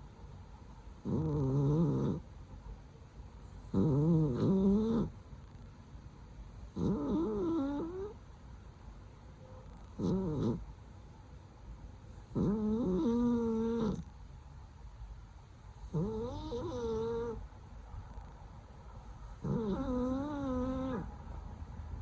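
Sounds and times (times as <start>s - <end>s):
cat snoring: 1.0s - 2.2s, 3.7s - 5.7s, 6.7s - 8.2s, 9.7s - 10.6s, 12.3s - 14.1s, 15.8s - 17.4s, 19.4s - 21.1s.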